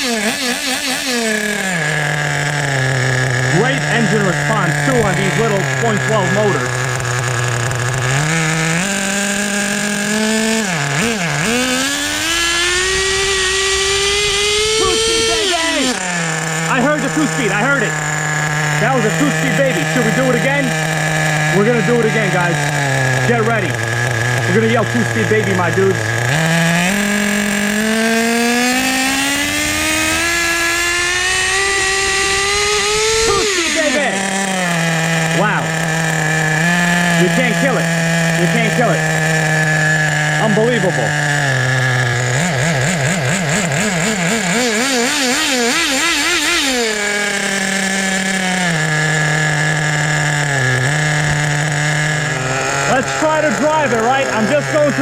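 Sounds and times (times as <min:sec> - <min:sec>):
rc car nitro engine revving: 0:00.0 - 0:55.0.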